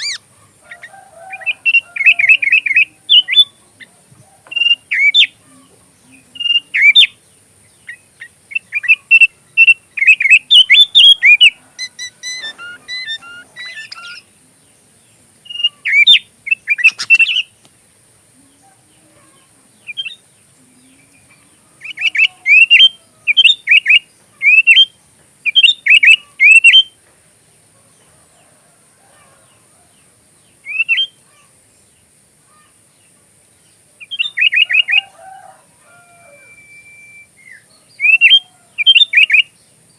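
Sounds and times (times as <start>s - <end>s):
songbird whistling: 0.0s - 0.2s, 4.5s - 5.4s, 6.4s - 7.2s, 7.8s - 14.3s, 15.5s - 17.5s, 19.9s - 20.2s, 21.8s - 24.9s, 25.5s - 27.0s, 30.6s - 31.2s, 34.0s - 35.2s, 36.1s - 39.6s
faint high hiss: 0.0s - 39.9s.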